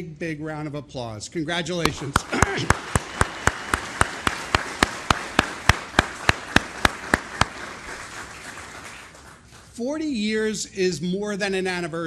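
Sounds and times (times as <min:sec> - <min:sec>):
audience applauding: 0:01.8 - 0:09.7
person clapping sharply: 0:01.8 - 0:09.7.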